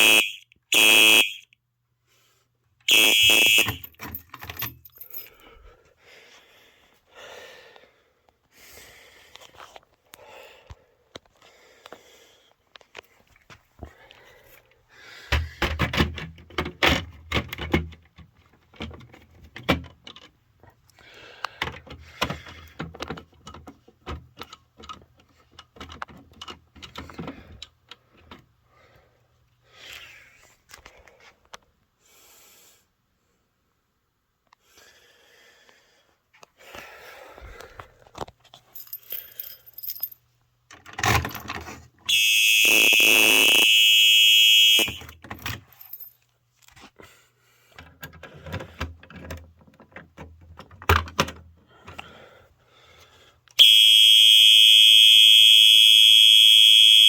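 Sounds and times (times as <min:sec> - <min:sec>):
alarm horn steady tone: 0:00.0 - 0:01.6, 0:02.9 - 0:04.0, 0:42.1 - 0:45.2, 0:53.6 - 0:57.0
keys jangling: 0:03.7 - 0:05.4, 0:38.8 - 0:40.2.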